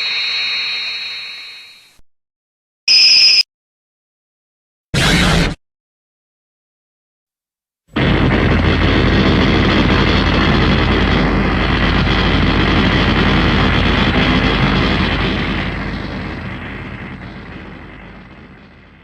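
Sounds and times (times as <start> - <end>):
giant robot mechanical rumble: 8.0 - 19.0.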